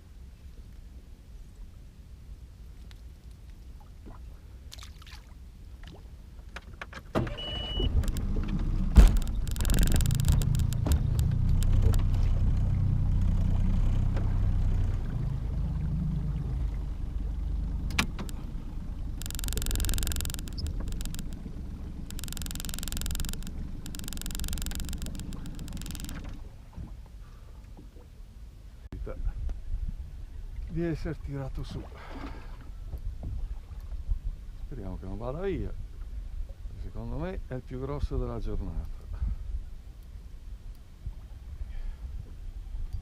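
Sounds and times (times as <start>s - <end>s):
short high beep: 7.3s - 8.0s, 19.2s - 21.4s, 22.1s - 26.2s
small motor humming: 18.2s - 26.3s.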